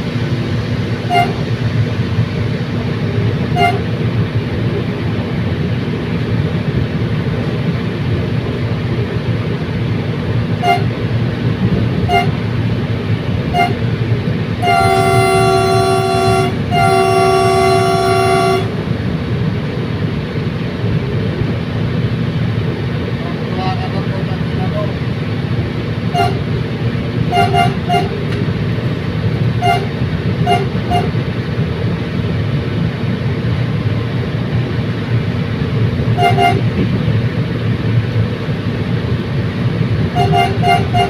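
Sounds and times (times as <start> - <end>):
train rumbling: 0.0 - 41.0
train horn toots and blasts: 1.0 - 1.6, 3.4 - 4.0, 10.5 - 11.1, 11.9 - 12.5, 13.4 - 14.0, 14.6 - 18.9, 26.1 - 26.6, 27.2 - 28.4, 29.6 - 31.2, 36.1 - 36.8, 40.1 - 41.0.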